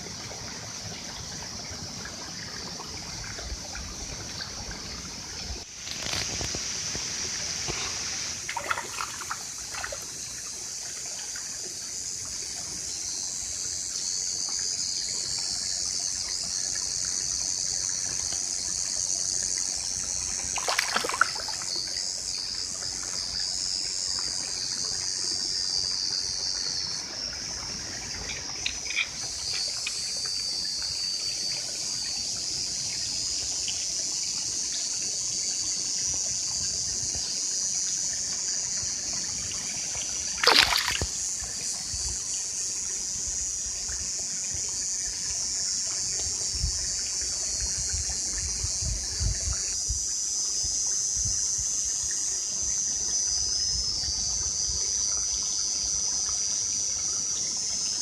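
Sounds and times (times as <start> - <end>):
stream water rushing: 0.0 - 12.8, 16.1 - 47.9.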